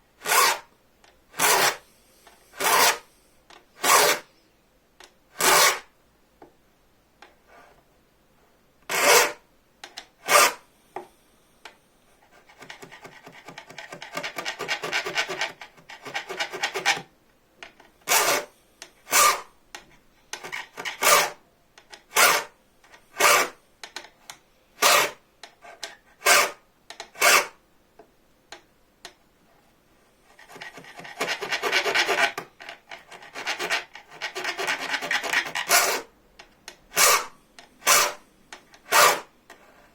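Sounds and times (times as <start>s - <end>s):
hand file filing steel blade: 0.2s - 0.7s, 1.4s - 1.8s, 2.6s - 3.1s, 3.8s - 4.3s, 5.4s - 5.9s, 8.9s - 9.4s, 10.2s - 10.6s, 12.4s - 17.1s, 18.0s - 18.5s, 19.1s - 19.5s, 20.4s - 21.4s, 22.1s - 22.6s, 23.2s - 23.6s, 24.8s - 26.6s, 27.2s - 27.6s, 30.4s - 36.1s, 36.9s - 38.2s, 38.8s - 39.3s.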